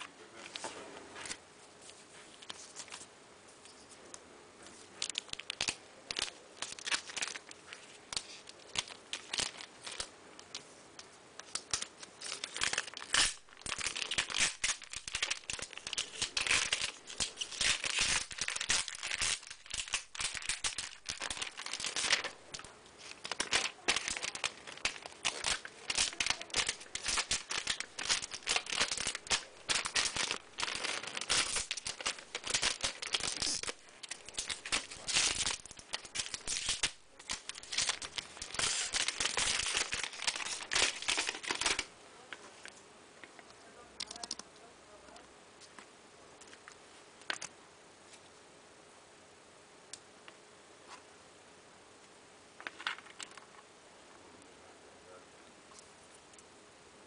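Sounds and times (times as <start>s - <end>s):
packaging crinkling and tearing: 5.0s - 10.6s, 11.4s - 41.9s, 52.6s - 53.5s.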